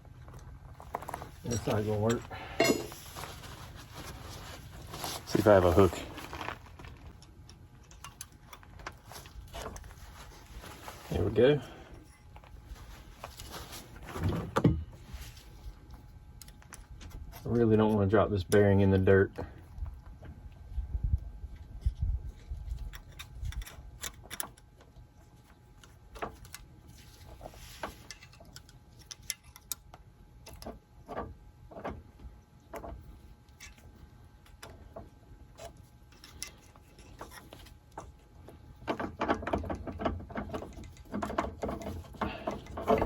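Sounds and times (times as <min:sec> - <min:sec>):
bearing clinking and rattling: 0:00.2 - 0:03.2.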